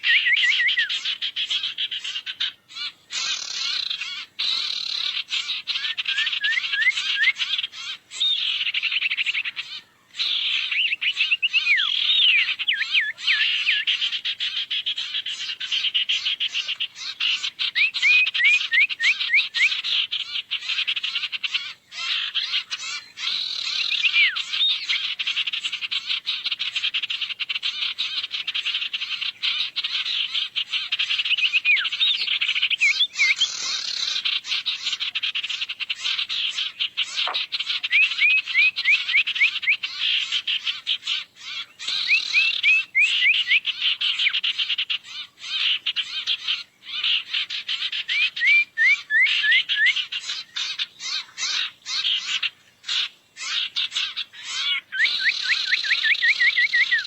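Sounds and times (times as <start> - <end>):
bird buzzy chatter and whistles: 0.0 - 1.1, 3.1 - 8.4, 30.7 - 44.4, 47.8 - 57.0.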